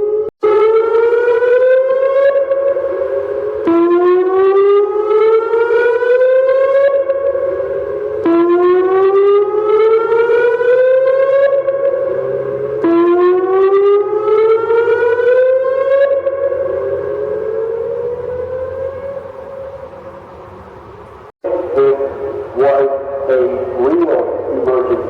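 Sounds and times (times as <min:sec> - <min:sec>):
warning siren wailing: 0:00.0 - 0:25.0.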